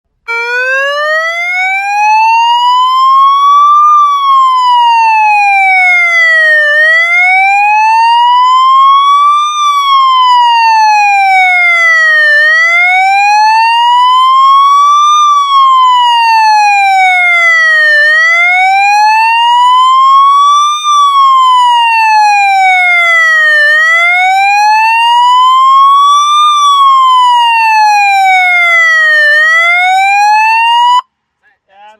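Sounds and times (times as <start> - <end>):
police motorcycle siren wailing: 0.3 - 31.0.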